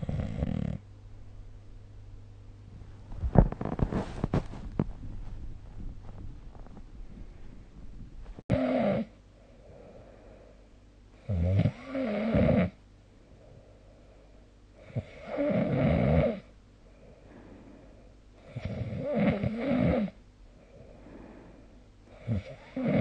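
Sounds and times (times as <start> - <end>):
person snoring: 0.0 - 0.8, 8.5 - 9.1, 11.2 - 12.8, 14.8 - 16.5, 18.4 - 20.2, 22.1 - 23.0.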